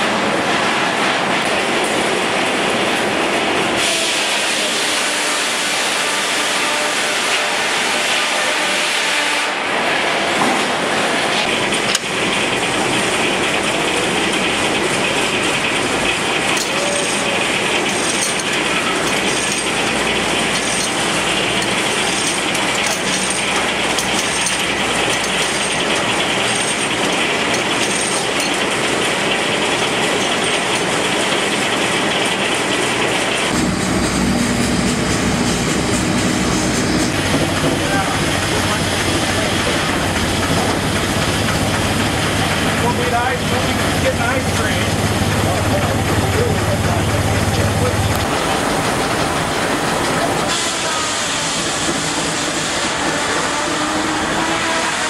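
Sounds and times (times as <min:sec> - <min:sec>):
sawmill machinery: 0:00.0 - 0:55.0
steam engine running: 0:00.0 - 0:55.0.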